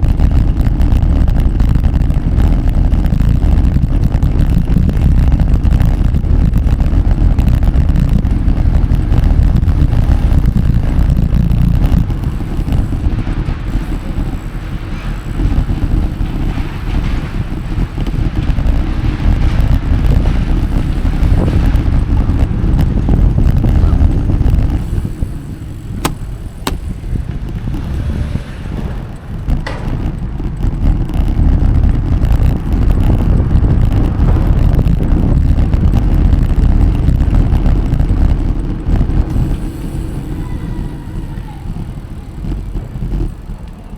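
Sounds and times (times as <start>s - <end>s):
bicycle tyre noise: 0.0s - 43.9s
traffic noise: 0.0s - 43.9s
wind rumbling on microphone: 0.0s - 43.9s
sharp clicks: 25.0s - 28.0s.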